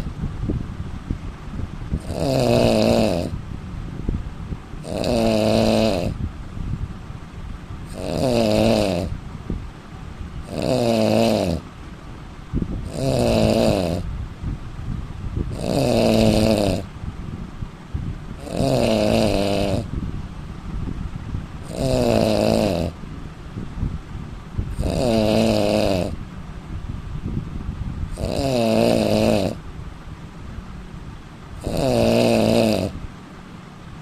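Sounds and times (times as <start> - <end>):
man snoring loudly: 2.0 - 3.4, 4.8 - 6.2, 7.9 - 9.2, 10.4 - 11.7, 12.8 - 14.1, 15.5 - 16.9, 18.4 - 19.9, 21.6 - 23.0, 24.7 - 26.2, 28.1 - 29.6, 31.6 - 33.0.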